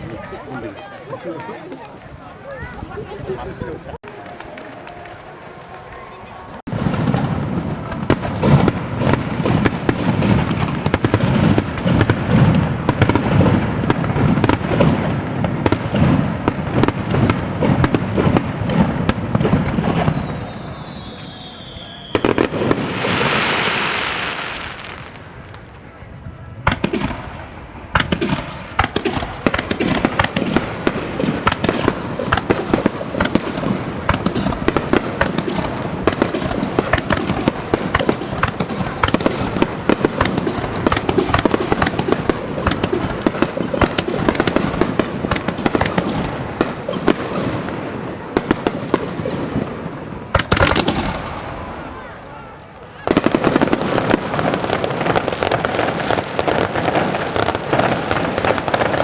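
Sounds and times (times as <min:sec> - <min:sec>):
fast crackling firework reports: 0:00.0 - 0:59.0.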